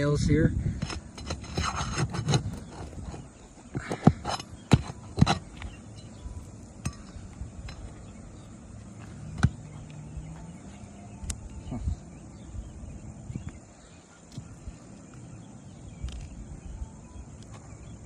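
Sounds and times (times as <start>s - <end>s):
metal tool clinking on nails: 3.8s - 8.5s.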